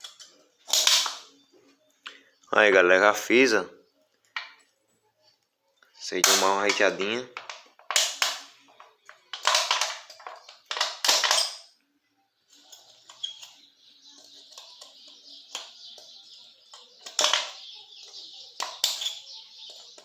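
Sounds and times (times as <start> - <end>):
beer can crinkling and snapping: 0.0 - 1.3, 6.2 - 11.4.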